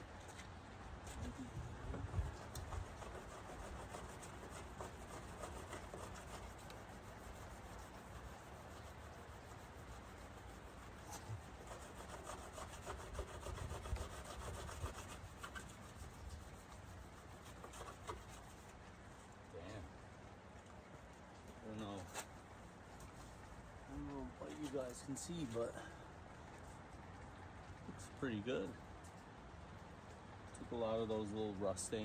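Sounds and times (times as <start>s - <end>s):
clay bar scrubbing car paint: 1.2s - 18.8s.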